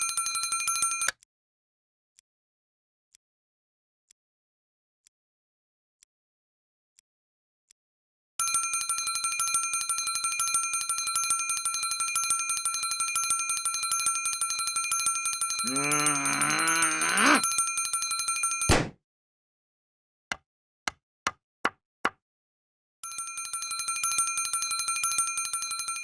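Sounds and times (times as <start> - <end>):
alarm clock bell ringing: 0.0 - 1.1, 8.4 - 16.9, 17.5 - 18.7, 23.0 - 26.0
drawn-out voice rising in pitch: 15.6 - 17.4.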